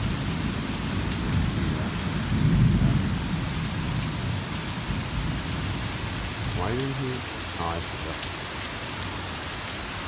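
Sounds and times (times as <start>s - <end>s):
low rumble of thunder: 0.0s - 6.6s
heavy rain falling: 0.0s - 10.0s.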